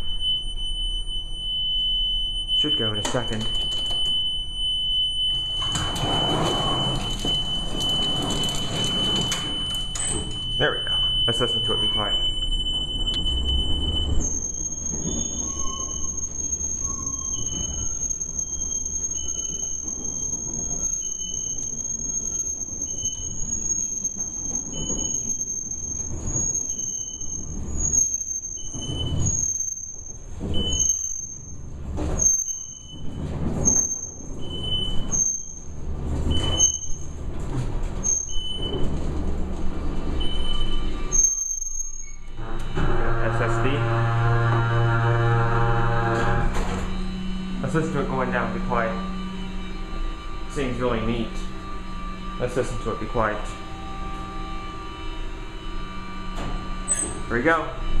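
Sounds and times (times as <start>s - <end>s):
elevator running in shaft: 0.0s - 58.0s
lower steady tone: 42.4s - 58.0s.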